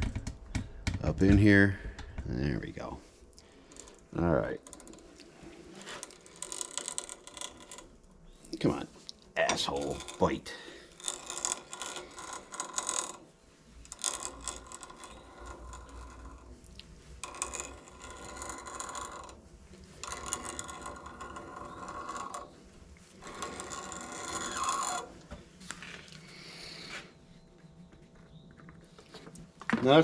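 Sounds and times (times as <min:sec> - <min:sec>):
tap grinding and squeaking in metal: 0:05.8 - 0:08.6, 0:09.4 - 0:16.6, 0:17.2 - 0:22.6, 0:23.2 - 0:26.1, 0:27.6 - 0:29.9.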